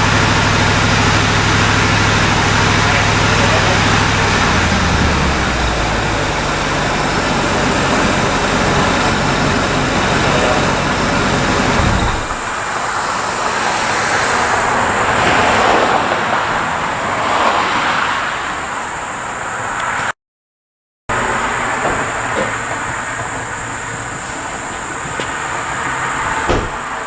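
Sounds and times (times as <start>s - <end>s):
engine low rumble: 0.0s - 15.3s
rushing noise: 0.0s - 17.6s.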